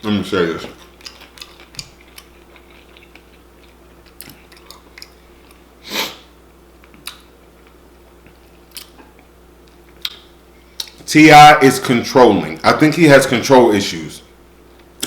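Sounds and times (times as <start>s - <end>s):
faint steady hum: 0.0s - 15.0s
person chewing food: 0.6s - 5.7s, 6.8s - 11.0s.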